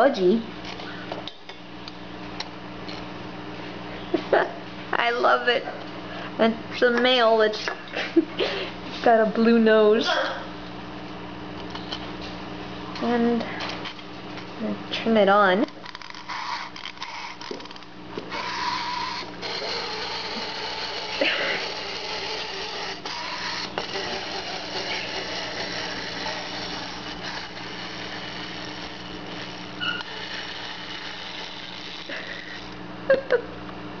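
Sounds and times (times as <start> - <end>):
wind-up toy whirring: 15.6 - 32.8.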